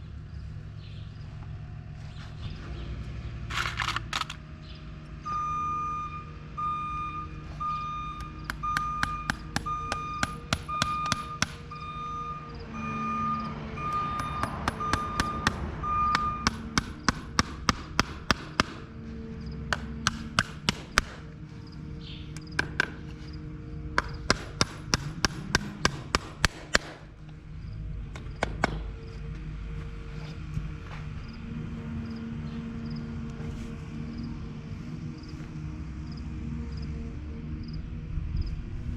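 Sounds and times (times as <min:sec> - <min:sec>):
reversing beeper: 0:05.2 - 0:16.8
sharp hammer-like taps: 0:08.2 - 0:11.6, 0:14.2 - 0:18.8, 0:19.7 - 0:21.2, 0:24.0 - 0:27.0
steady low hum: 0:15.6 - 0:38.9.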